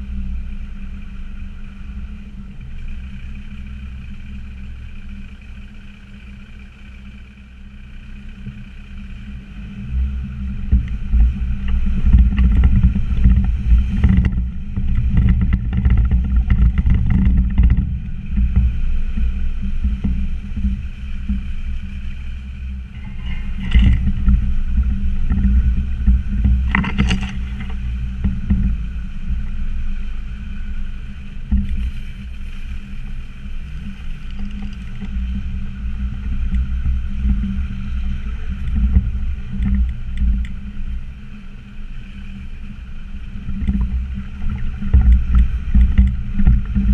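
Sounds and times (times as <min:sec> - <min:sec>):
diesel engine working hard: 0:00.0 - 0:46.9
vehicle clattering over bumps: 0:08.4 - 0:41.2.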